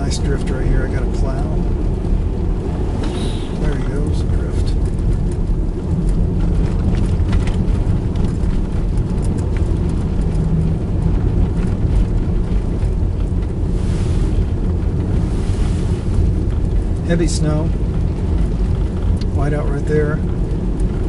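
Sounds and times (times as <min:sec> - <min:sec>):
engine and tyres rumbling: 0:00.0 - 0:21.0
short rush of hiss: 0:03.0 - 0:03.6.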